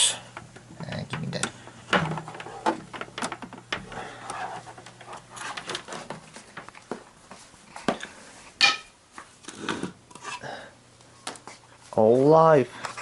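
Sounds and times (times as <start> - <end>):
objects clicking and knocking: 0.4 - 7.0.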